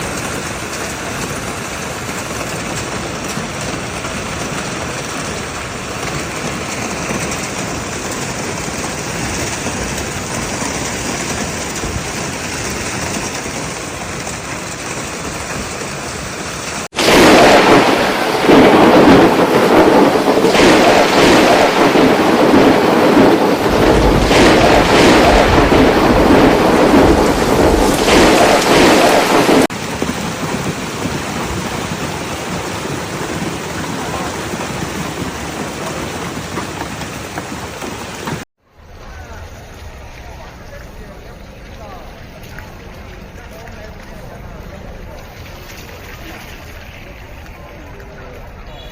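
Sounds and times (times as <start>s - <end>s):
hailstones pelting a surface: 0.0s - 38.4s
heavy hail and rain: 0.0s - 48.9s.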